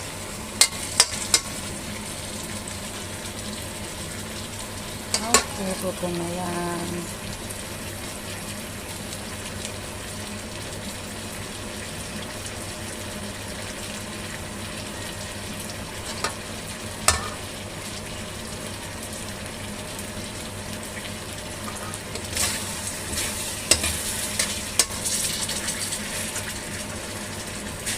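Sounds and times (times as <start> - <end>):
chicken wings sizzling in a pan: 0.0 - 27.9
utensil scraping and clattering on pan: 0.6 - 1.6, 17.1 - 17.4, 21.7 - 26.4.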